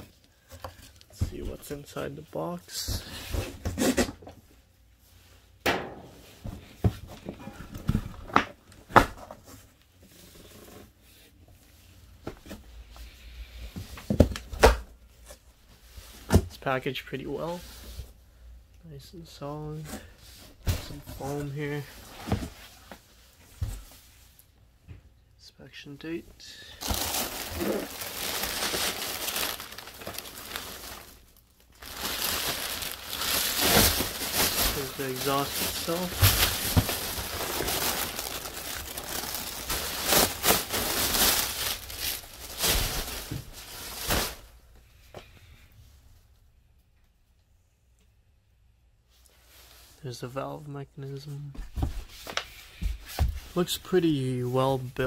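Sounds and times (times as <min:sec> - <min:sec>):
packaging rustling and scraping: 0:26.8 - 0:44.5.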